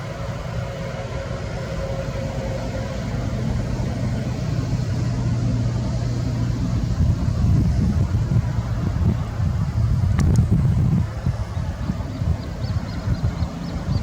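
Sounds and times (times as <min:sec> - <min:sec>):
road traffic rumble: 0:00.0 - 0:14.0.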